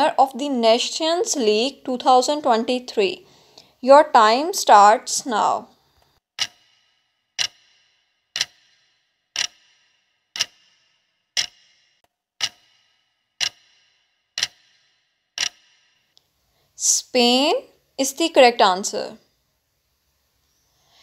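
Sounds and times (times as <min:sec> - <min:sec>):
clock ticking: 0:06.4 - 0:11.8, 0:12.4 - 0:15.9.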